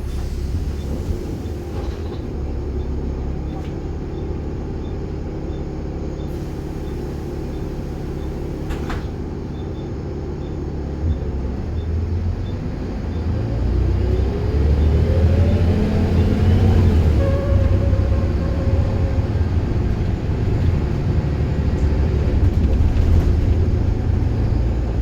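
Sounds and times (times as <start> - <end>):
diesel bus engine: 0.0 - 25.0
rising whine: 14.0 - 21.5.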